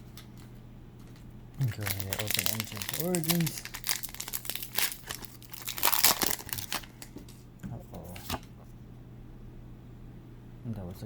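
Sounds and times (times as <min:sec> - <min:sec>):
foil wrapper tearing and crinkling: 0:01.6 - 0:07.1.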